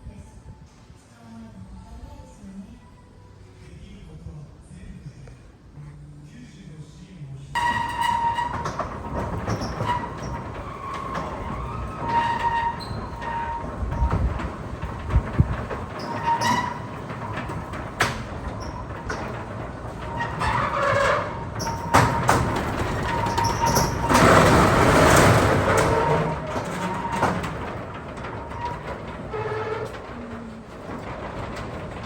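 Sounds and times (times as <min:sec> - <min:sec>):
rumbling work noise: 0:05.9 - 0:32.0
sharp knocks and clanks: 0:07.6 - 0:32.0.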